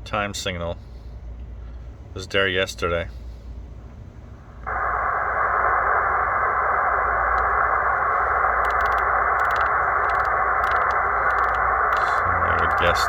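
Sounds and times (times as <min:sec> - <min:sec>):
radio static hiss: 0:04.6 - 0:13.0.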